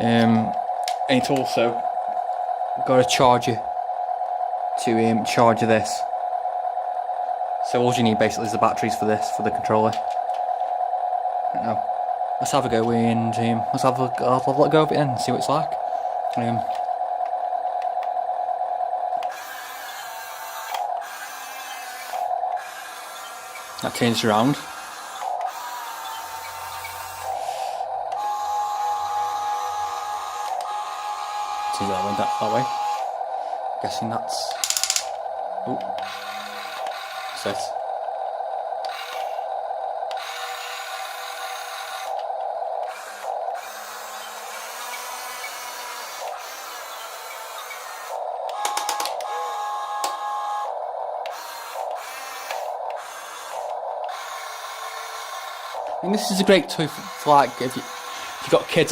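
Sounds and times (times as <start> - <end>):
small electric motors whining: 0.0 - 58.9
quick clicks: 48.5 - 49.3.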